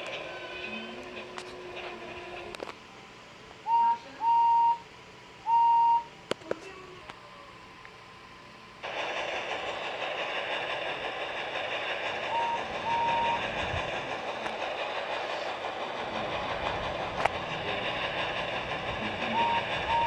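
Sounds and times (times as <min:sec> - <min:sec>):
train rushing: 0:00.0 - 0:06.1, 0:08.8 - 0:20.0
high-pitched train toots: 0:03.6 - 0:06.1, 0:08.9 - 0:20.0.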